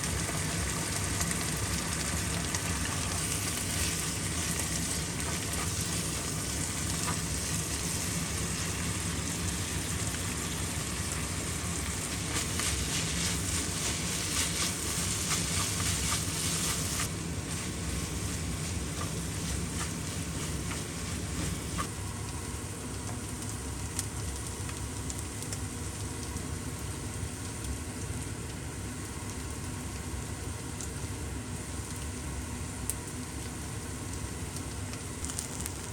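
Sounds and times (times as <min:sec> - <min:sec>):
food sizzling in a frying pan: 0:00.0 - 0:26.2.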